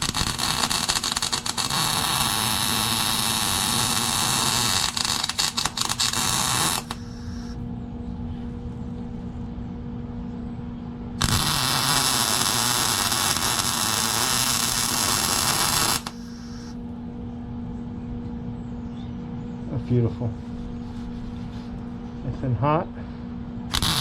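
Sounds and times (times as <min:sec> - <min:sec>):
welder arc crackling: 0:00.0 - 0:07.6, 0:11.2 - 0:16.8, 0:23.7 - 0:24.0
steady electrical hum: 0:00.0 - 0:24.0.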